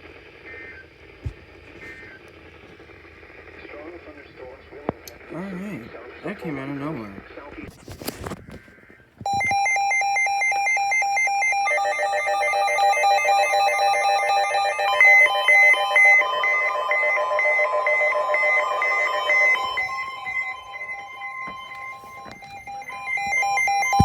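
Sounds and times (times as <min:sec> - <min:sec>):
weather radio alert tones: 0:09.2 - 0:24.0
rapid electronic beeping: 0:09.3 - 0:24.0.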